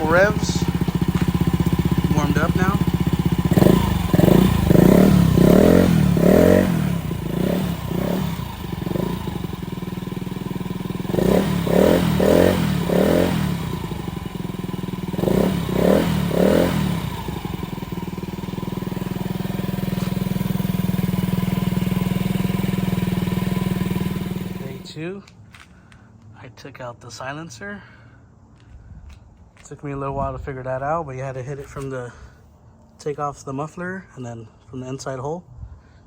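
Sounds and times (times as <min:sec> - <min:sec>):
scooter engine revving and idling: 0:00.0 - 0:25.0.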